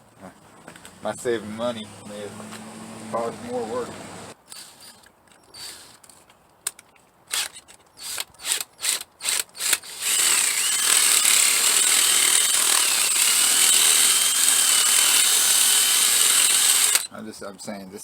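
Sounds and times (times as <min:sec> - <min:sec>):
power drill whining: 0:01.6 - 0:06.0, 0:07.3 - 0:17.1.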